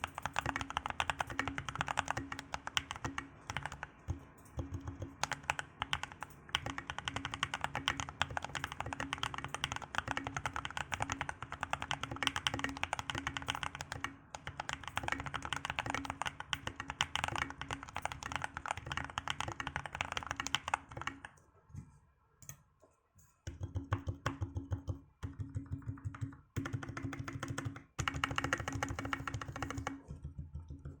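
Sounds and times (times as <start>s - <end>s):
mechanical keyboard typing: 0.0s - 21.4s, 23.5s - 30.0s.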